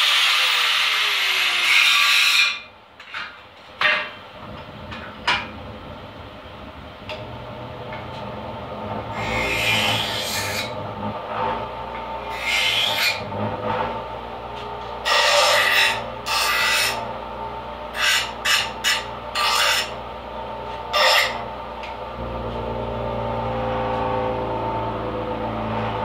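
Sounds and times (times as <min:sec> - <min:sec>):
steady hum: 0:02.7 - 0:12.4
hand file rasping on sheet metal: 0:09.1 - 0:14.0, 0:15.0 - 0:17.0, 0:17.9 - 0:20.0, 0:20.9 - 0:21.5.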